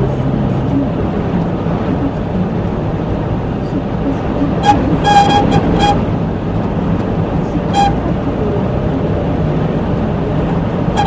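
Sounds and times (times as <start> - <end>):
road and wind noise: 0.0 - 11.0
high-pitched wind whistle: 4.5 - 6.3, 7.7 - 8.1.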